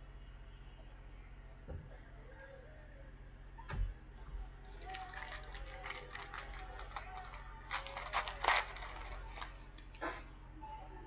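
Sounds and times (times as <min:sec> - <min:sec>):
foil card pack crinkling: 0:04.6 - 0:10.0.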